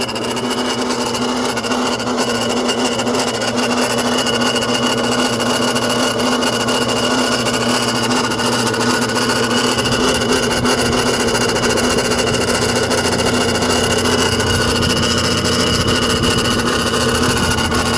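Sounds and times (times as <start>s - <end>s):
car engine running: 0.0s - 17.9s
grinding noise: 0.0s - 17.9s
deep hum: 9.2s - 17.9s.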